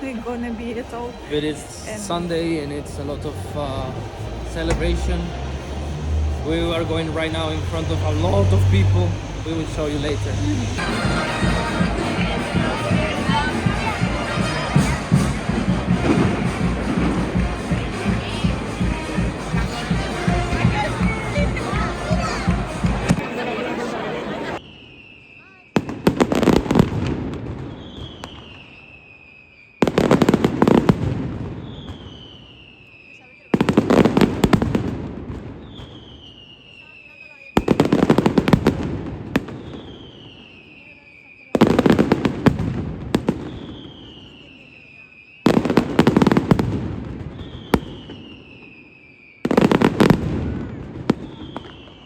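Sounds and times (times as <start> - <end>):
firecrackers going off: 3.4 - 52.0
firecracker bangs: 10.0 - 23.3, 41.6 - 44.6, 45.5 - 48.7, 49.5 - 52.0
descending high whistle: 24.6 - 25.8, 47.4 - 49.5.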